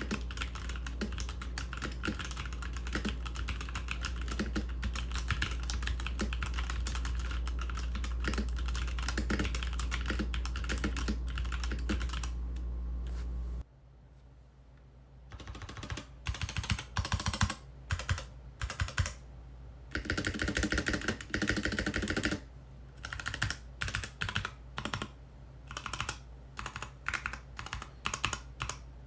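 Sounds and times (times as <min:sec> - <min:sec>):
typing on mechanical keyboard: 0:00.0 - 0:12.4, 0:15.3 - 0:19.2, 0:19.9 - 0:22.4, 0:23.0 - 0:28.8.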